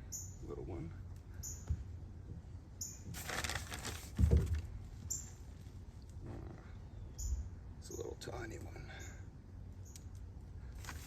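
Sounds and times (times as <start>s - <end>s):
hands digging through soil: 3.1s - 4.2s
dull thump: 4.1s - 4.7s.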